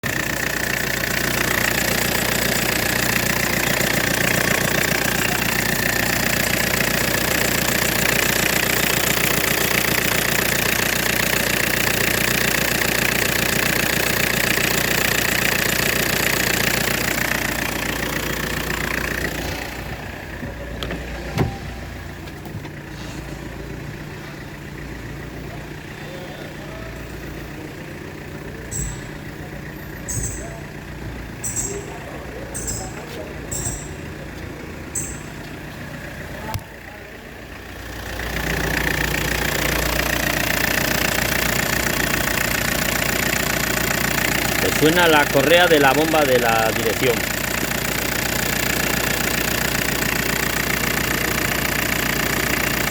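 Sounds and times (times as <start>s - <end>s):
diesel engine idling: 0.0s - 52.9s
belt squealing: 30.0s - 30.6s, 32.6s - 34.0s.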